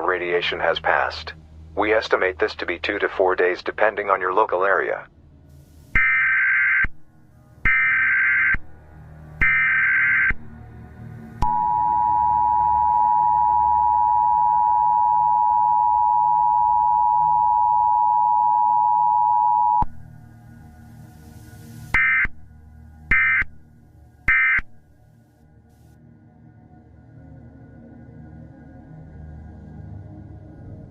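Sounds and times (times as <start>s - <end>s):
low ambient music drone: 0.0s - 30.9s
two-tone alarm: 6.0s - 6.9s, 7.6s - 8.6s, 9.4s - 10.4s, 11.4s - 19.9s, 22.0s - 22.3s, 23.1s - 23.5s, 24.3s - 24.7s
buzzing digital data tones: 23.1s - 23.4s.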